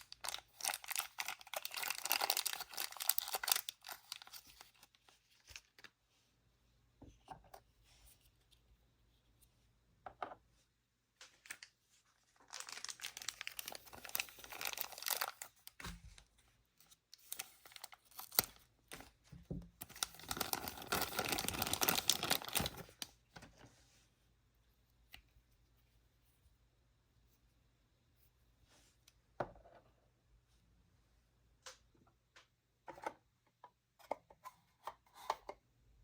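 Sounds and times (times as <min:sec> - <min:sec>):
packaging tearing and rustling: 0:00.0 - 0:04.9, 0:12.3 - 0:15.8, 0:17.2 - 0:19.0, 0:19.8 - 0:23.0.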